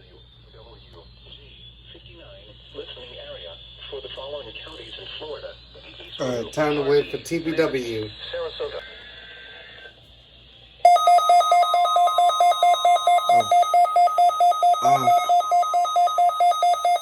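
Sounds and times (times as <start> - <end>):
pulsing electronic alarm beep: 10.9 - 17.0.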